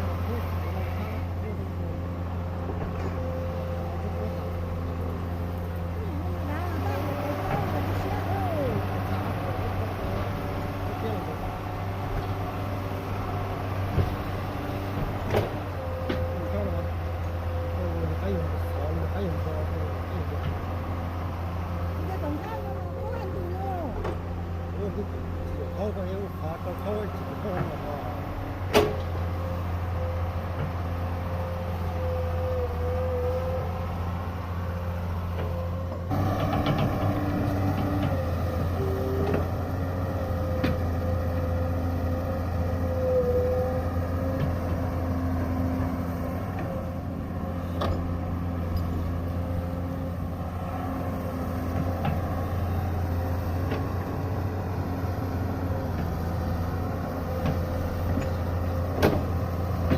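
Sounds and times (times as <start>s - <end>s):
diesel engine running: 0.0s - 59.9s.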